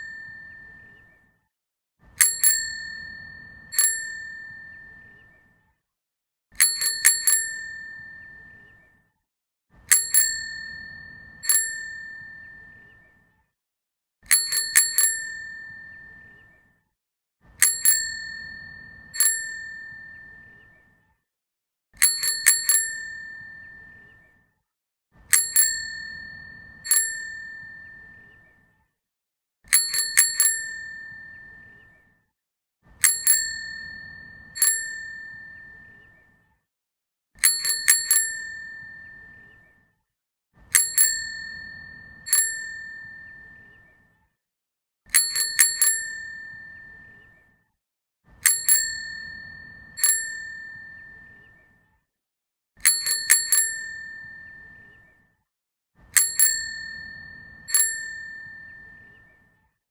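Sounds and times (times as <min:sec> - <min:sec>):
bicycle bell ringing: 0:00.0 - 0:01.0, 0:02.2 - 0:05.0, 0:06.6 - 0:08.6, 0:09.9 - 0:12.8, 0:14.3 - 0:16.2, 0:17.6 - 0:20.6, 0:22.0 - 0:24.0, 0:25.3 - 0:28.2, 0:29.7 - 0:31.7, 0:33.0 - 0:36.0, 0:37.4 - 0:39.4, 0:40.7 - 0:43.6, 0:45.1 - 0:47.1, 0:48.4 - 0:51.4, 0:52.8 - 0:54.8, 0:56.1 - 0:59.0.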